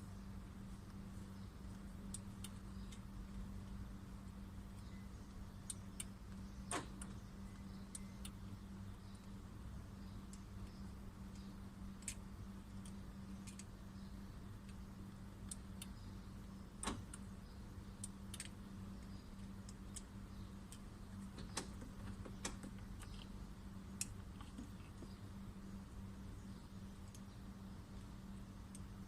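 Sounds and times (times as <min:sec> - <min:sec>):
steady low hum: 0:00.0 - 0:29.0
small clicks and taps: 0:01.6 - 0:03.8, 0:10.0 - 0:14.0, 0:18.0 - 0:25.2.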